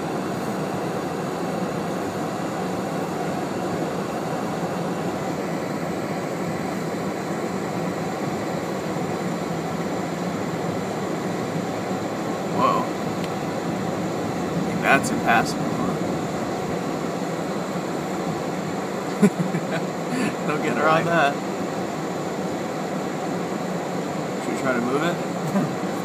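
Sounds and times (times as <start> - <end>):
car engine: 0.0 - 26.0
tyres on snowy road: 2.6 - 21.8.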